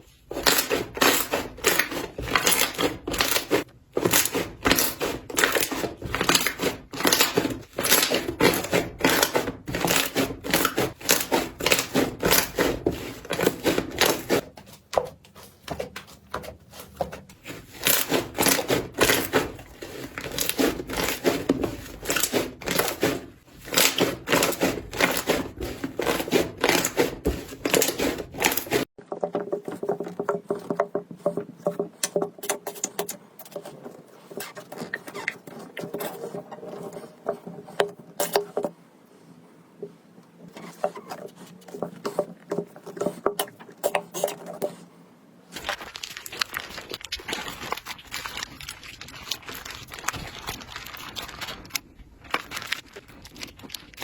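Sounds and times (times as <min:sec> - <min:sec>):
soft slime squishing: 0:00.0 - 0:54.0
slime crackling and popping: 0:45.6 - 0:54.0.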